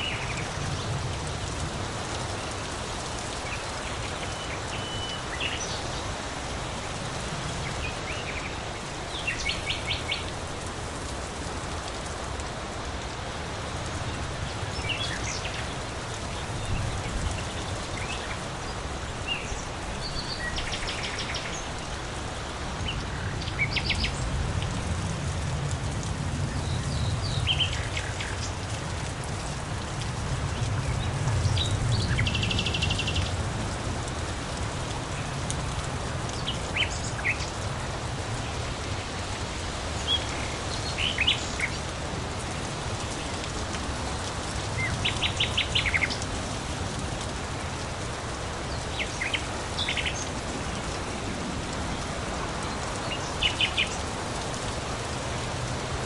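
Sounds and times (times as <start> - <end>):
steady rain: 0.0 - 56.0
small birds chirping and trilling: 48.7 - 50.9, 52.6 - 54.2.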